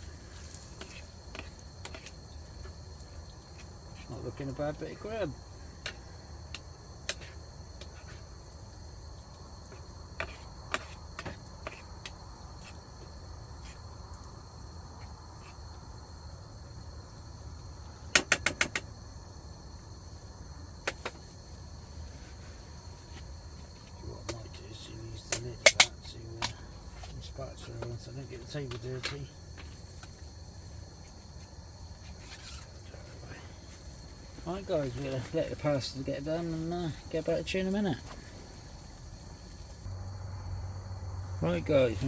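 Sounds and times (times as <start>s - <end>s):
crickets chirring: 0.0s - 42.0s
sharp clicks and taps: 18.2s - 18.9s.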